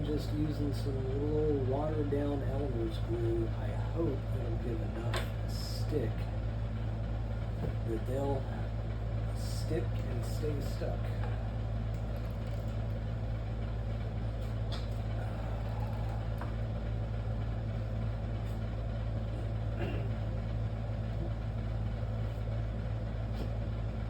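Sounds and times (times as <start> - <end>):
low mechanical hum: 0.0 - 24.0.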